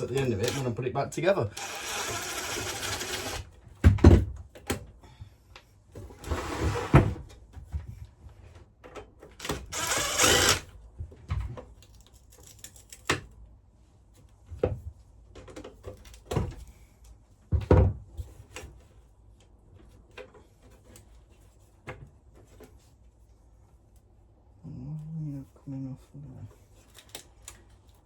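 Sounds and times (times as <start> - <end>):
power tool burst: 1.6 - 3.4, 9.7 - 10.6.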